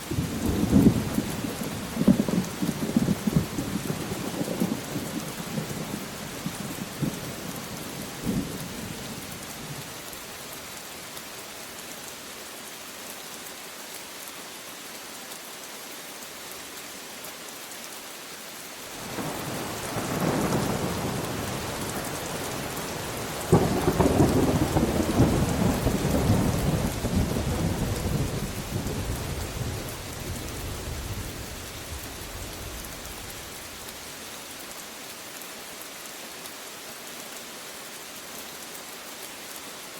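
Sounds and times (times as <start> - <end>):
steady rain: 0.0 - 39.9
rolling thunder: 0.1 - 6.0, 23.4 - 33.5.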